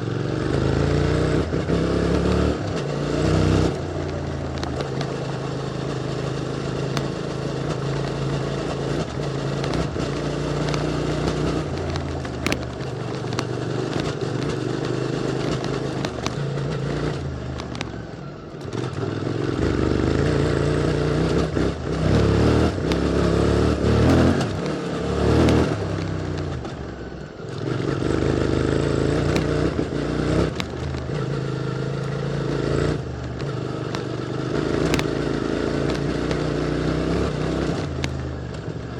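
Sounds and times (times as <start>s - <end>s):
motorcycle engine revving: 0.0s - 38.9s
stones clicking and clattering: 10.6s - 16.4s, 25.3s - 25.8s, 34.8s - 35.2s.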